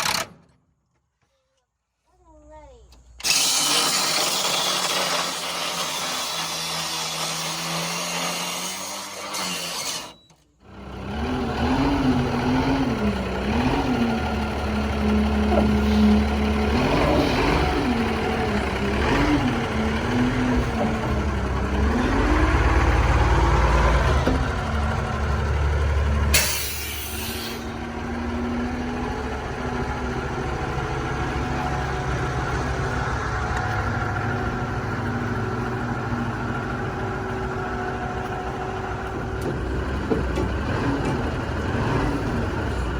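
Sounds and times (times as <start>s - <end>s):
diesel truck engine running: 10.6s - 42.9s
air brake hiss: 26.4s - 27.7s.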